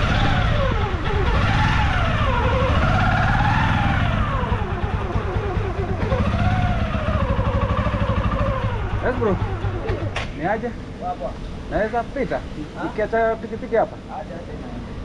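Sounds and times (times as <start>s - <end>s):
motorcycle engine revving: 0.0s - 10.8s.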